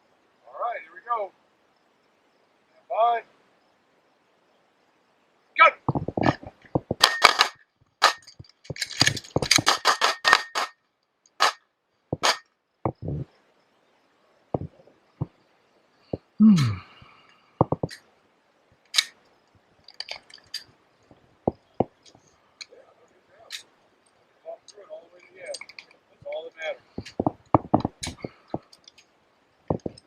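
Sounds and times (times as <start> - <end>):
sharp clicks and clacks: 5.9 - 11.6, 12.2 - 13.0, 27.0 - 29.0, 29.7 - 30.0.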